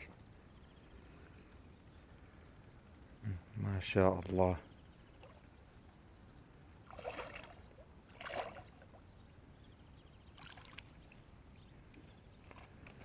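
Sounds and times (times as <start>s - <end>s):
faint water splashes: 3.2s - 6.0s, 6.8s - 9.4s, 10.0s - 13.0s.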